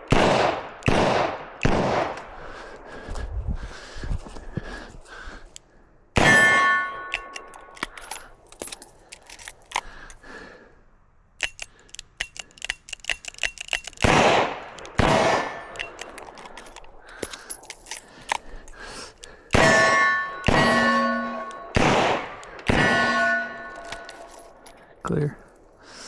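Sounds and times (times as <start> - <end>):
revolver reloading clicks: 0.0 - 2.4, 5.5 - 10.2, 11.4 - 25.1
steel target ringing: 6.2 - 7.7, 19.5 - 24.6.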